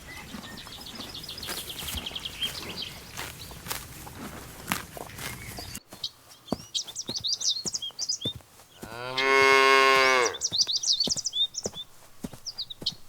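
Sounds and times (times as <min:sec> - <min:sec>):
small birds chirping: 0:00.0 - 0:13.0
cow mooing: 0:08.8 - 0:10.4.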